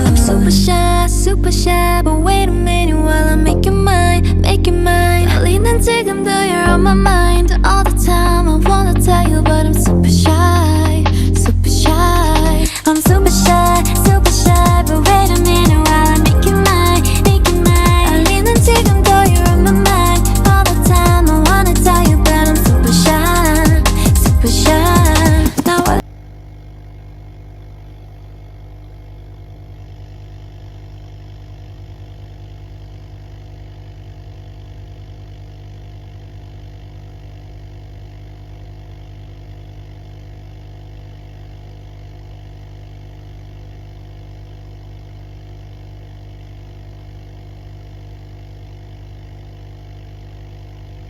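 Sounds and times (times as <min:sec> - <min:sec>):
pop music: 0:00.0 - 0:26.0
motor hum: 0:00.0 - 0:51.0.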